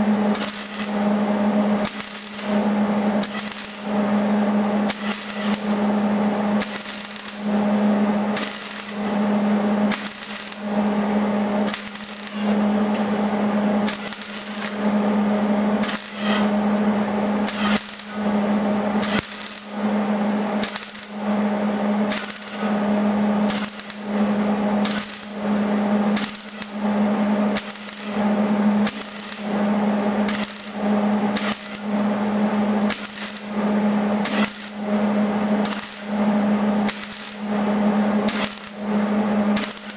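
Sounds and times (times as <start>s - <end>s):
steady electrical hum: 0.0s - 39.9s
welder crackling: 0.0s - 39.9s.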